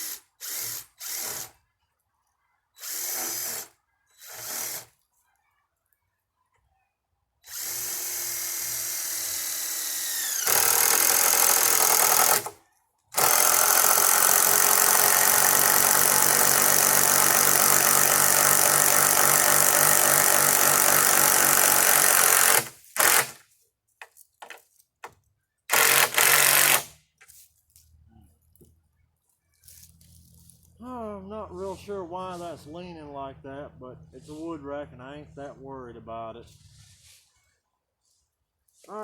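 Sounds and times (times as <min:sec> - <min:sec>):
power drill running: 0:00.0 - 0:01.5, 0:02.8 - 0:04.9, 0:07.5 - 0:12.6, 0:13.2 - 0:23.4, 0:25.7 - 0:26.9.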